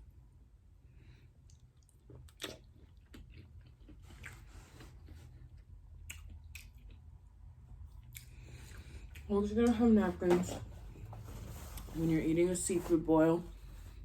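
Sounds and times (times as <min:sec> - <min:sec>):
close-up chewing: 0:01.4 - 0:07.2.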